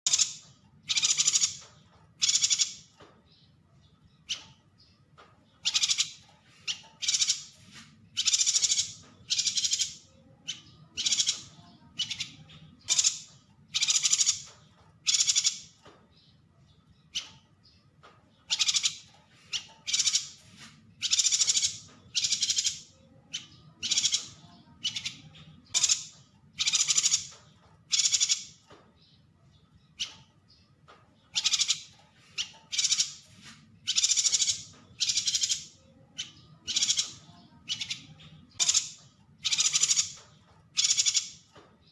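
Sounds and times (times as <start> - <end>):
bird calling high-pitched phrases: 8.2 - 14.4, 21.0 - 28.5, 31.3 - 40.2.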